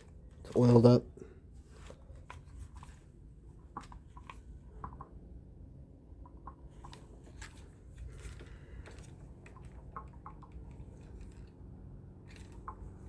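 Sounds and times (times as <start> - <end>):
low steady hum: 0.0 - 13.0
small parts clicking: 6.2 - 13.0.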